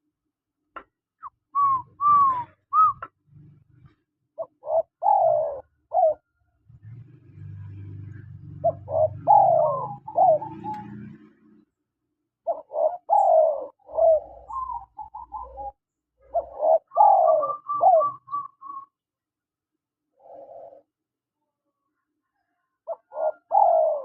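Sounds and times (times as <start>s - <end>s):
dove cooing: 1.6s - 3.1s, 3.8s - 6.9s, 7.6s - 11.6s, 12.4s - 18.9s, 20.2s - 20.9s, 22.8s - 24.0s.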